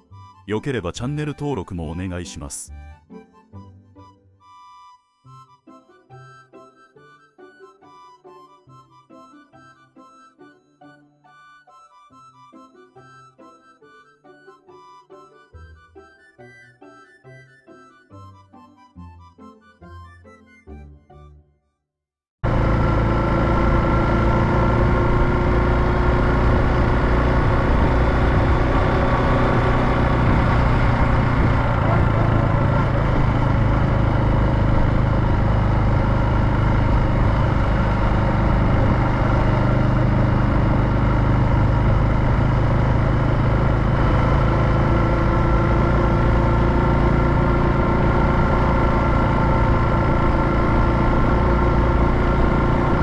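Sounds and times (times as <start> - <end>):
motorcycle engine running: 22.4 - 53.0.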